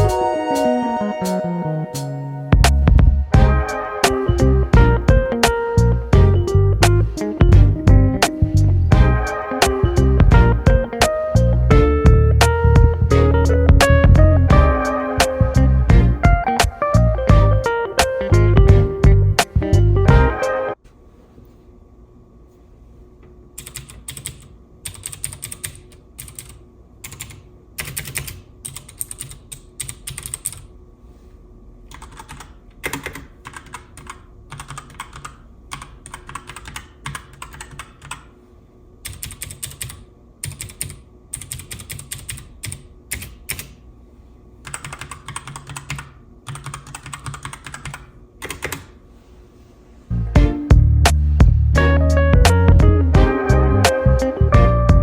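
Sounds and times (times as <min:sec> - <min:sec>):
mechanical keyboard typing: 0:23.6 - 0:30.7, 0:31.9 - 0:38.3, 0:39.0 - 0:43.8, 0:44.6 - 0:48.9.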